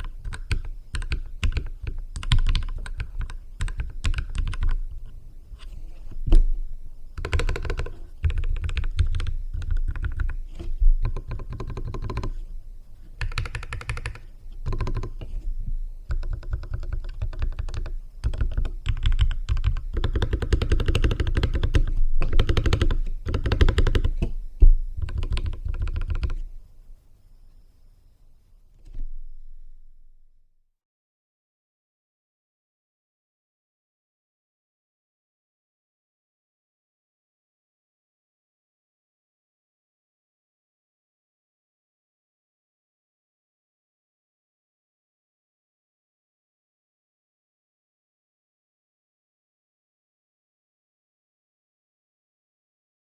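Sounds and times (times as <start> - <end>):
mechanical keyboard typing: 0.0 - 4.8, 7.2 - 10.4, 11.0 - 12.4, 13.2 - 15.3, 16.1 - 24.2, 25.0 - 26.4.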